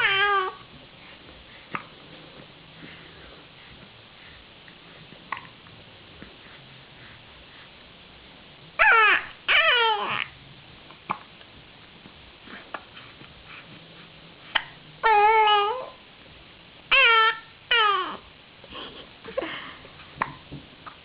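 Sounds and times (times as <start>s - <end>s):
newborn baby squealing cries: 0.0s - 0.6s, 8.8s - 10.3s, 16.9s - 18.2s.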